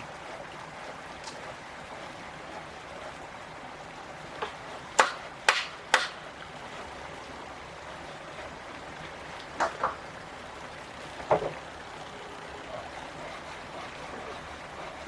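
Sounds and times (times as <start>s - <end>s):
flowing water rushing: 0.0s - 15.0s
sharp knocks: 4.4s - 6.2s.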